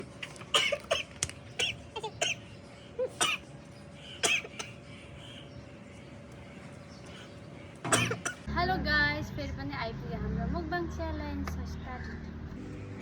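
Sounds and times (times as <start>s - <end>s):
person coughing hard: 0.5s - 2.4s, 3.2s - 3.4s, 4.2s - 4.8s, 7.9s - 8.4s.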